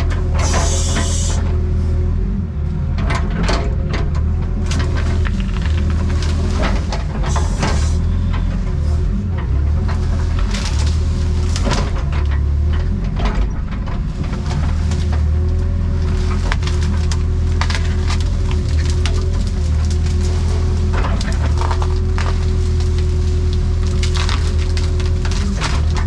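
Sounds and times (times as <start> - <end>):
excavator diesel engine droning: 0.0 - 26.0
machine knocks and clanks: 11.5 - 15.3.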